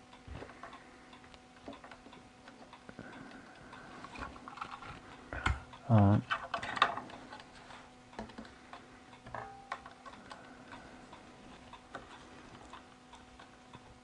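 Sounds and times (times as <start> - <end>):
low steady hum: 0.0 - 14.0
metal parts clicking and tapping: 6.3 - 7.5.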